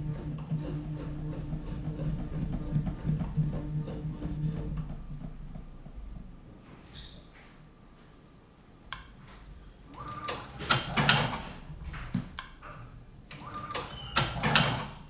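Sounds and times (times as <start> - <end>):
machine click: 9.9 - 15.0.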